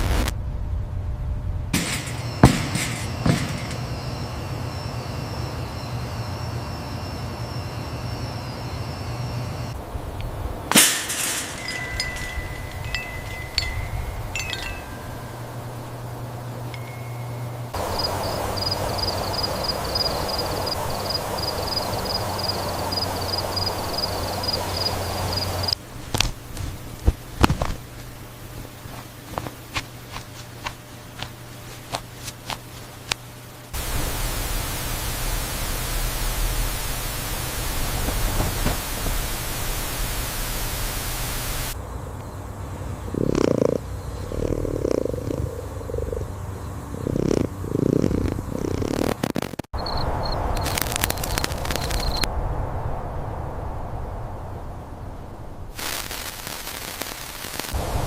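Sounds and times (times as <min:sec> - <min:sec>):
loud static hiss: 0:00.0 - 0:00.5, 0:01.7 - 0:42.1, 0:48.1 - 0:53.1, 0:55.2 - 0:58.0
low hum: 0:00.2 - 0:31.9
sharp impact: 0:01.7 - 0:04.2, 0:10.7 - 0:15.4
high metallic ringing: 0:01.8 - 0:06.0, 0:09.8 - 0:20.4
faint hiss: 0:33.8 - 0:41.8, 0:50.1 - 0:58.0.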